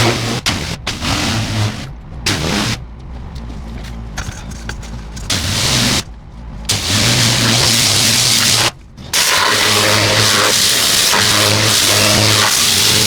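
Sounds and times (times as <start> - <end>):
pressure washer engine running: 0.0 - 2.8, 5.3 - 6.0, 6.7 - 13.0
pressure washer spray hiss: 6.7 - 13.0.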